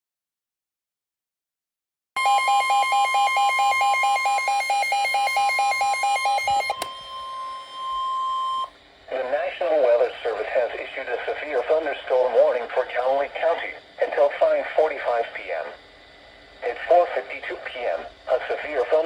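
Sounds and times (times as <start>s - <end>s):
fast pulsing beep: 2.2s - 8.7s.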